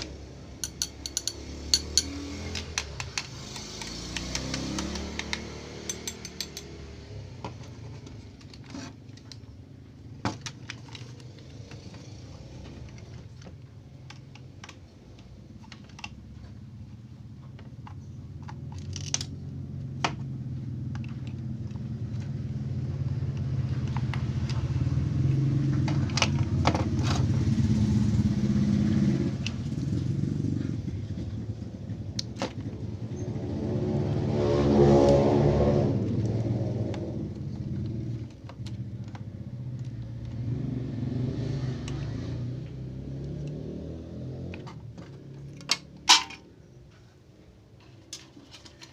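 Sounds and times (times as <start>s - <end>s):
sharp clicks and rattles: 0.0s - 6.8s, 10.2s - 20.2s, 44.5s - 46.5s.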